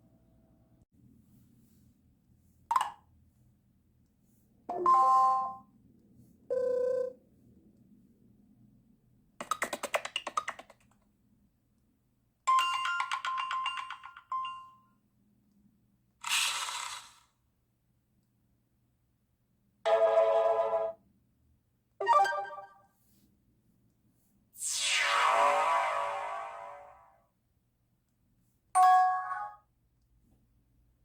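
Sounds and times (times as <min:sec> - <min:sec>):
phone notification chimes and beeps: 0:04.7 - 0:05.6, 0:22.0 - 0:22.8, 0:28.8 - 0:29.6
rapid pulsing notification notes: 0:22.0 - 0:22.7.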